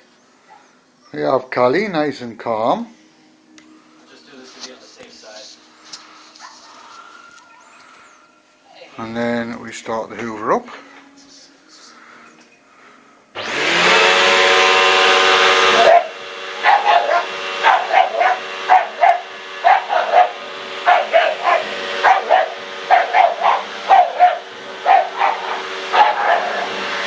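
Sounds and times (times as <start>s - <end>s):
dog barking: 6.4s - 8.0s, 15.7s - 26.8s
vacuum cleaner running: 12.8s - 27.0s.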